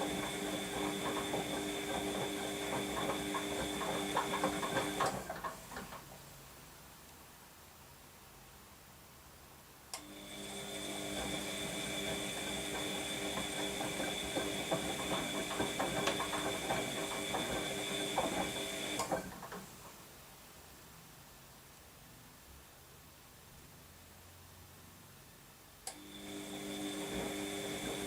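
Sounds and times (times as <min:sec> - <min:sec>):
washing machine motor whining: 0:00.0 - 0:06.0, 0:10.0 - 0:19.6, 0:25.9 - 0:28.0.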